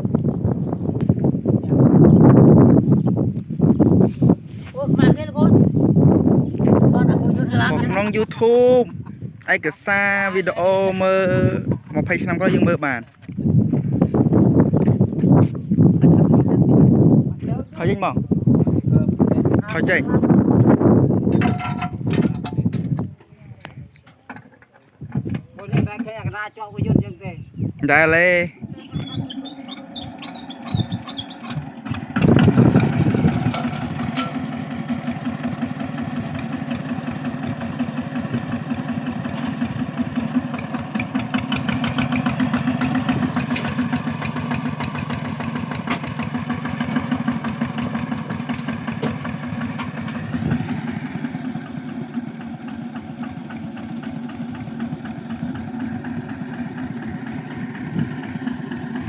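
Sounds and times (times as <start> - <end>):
diesel engine starting and puttering: 19.5 - 23.2, 27.9 - 59.0.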